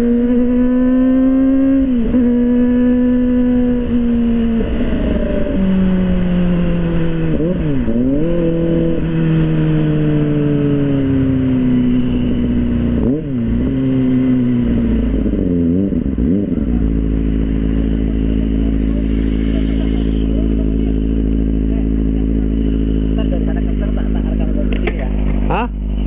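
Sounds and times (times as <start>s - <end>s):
motorcycle engine idling: 16.7s - 26.0s.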